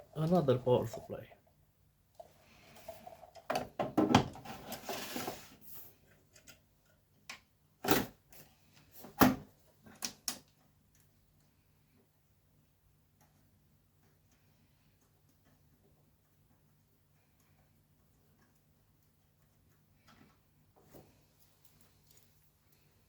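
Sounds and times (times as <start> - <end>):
sliding metal scrape: 4.4 - 6.0.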